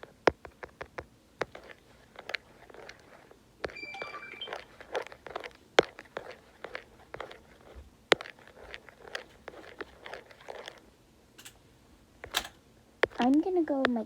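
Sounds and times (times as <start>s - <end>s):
electronic beep: 3.7s - 4.7s.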